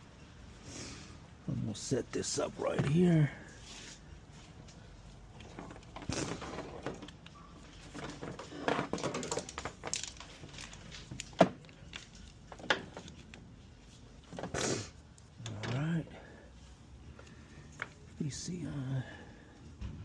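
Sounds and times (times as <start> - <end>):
rustling: 3.4 - 15.8.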